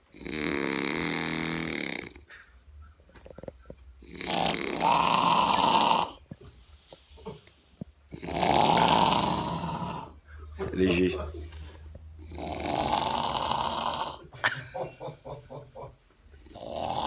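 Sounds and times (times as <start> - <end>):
man snoring heavily: 0.1 - 2.3, 4.0 - 6.2, 8.1 - 10.2, 12.2 - 14.3, 16.5 - 17.0
quiet breathing: 6.0 - 8.1.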